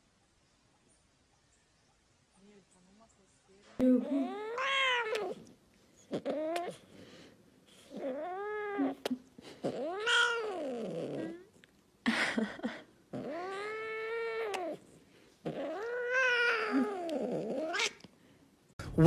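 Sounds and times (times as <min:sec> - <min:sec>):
cat yowling: 0:04.2 - 0:05.4, 0:09.7 - 0:11.4, 0:13.2 - 0:14.8, 0:15.5 - 0:18.0.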